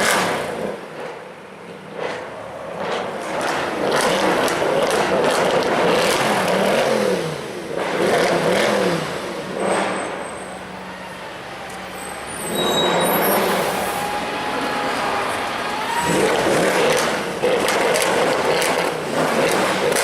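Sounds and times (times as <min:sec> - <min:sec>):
car engine revving: 0:01.8 - 0:10.2, 0:16.0 - 0:20.0.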